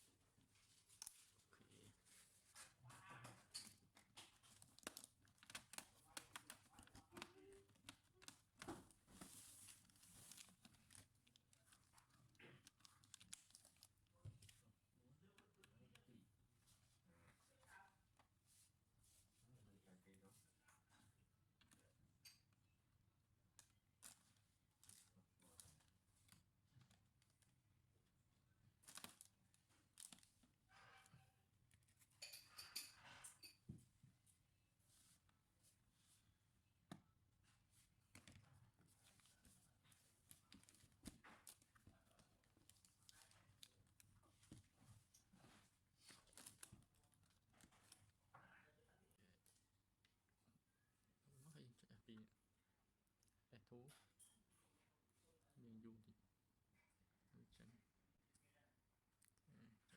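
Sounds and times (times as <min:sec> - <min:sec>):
faint clicks and scrapes: 0:00.1 - 0:22.6, 0:28.7 - 0:50.4
faint clicks of small parts: 0:02.6 - 0:16.2, 0:28.8 - 0:33.6.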